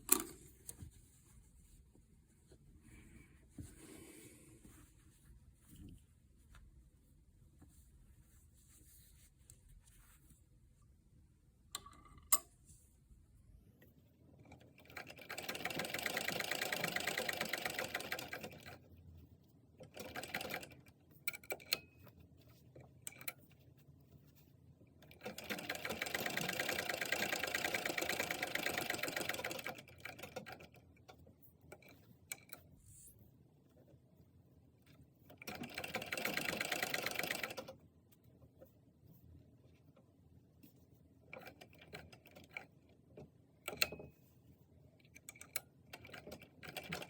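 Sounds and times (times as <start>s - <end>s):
sewing machine stitching fabric: 14.4s - 18.9s, 19.8s - 21.9s, 25.0s - 32.6s, 35.2s - 37.8s, 45.2s - 47.0s.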